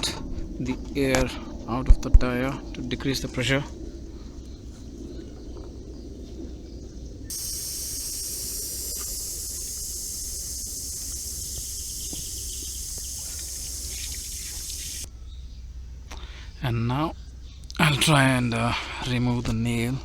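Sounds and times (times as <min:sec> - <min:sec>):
air hissing out of tyre: 0:07.3 - 0:15.1.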